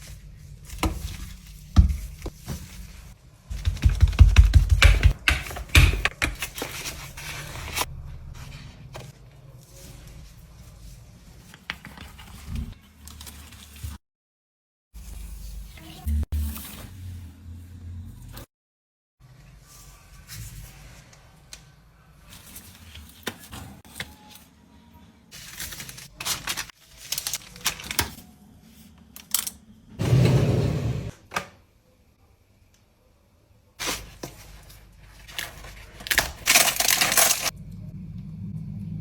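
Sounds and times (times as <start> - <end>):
kitchen clicks and taps: 3.6 - 6.5.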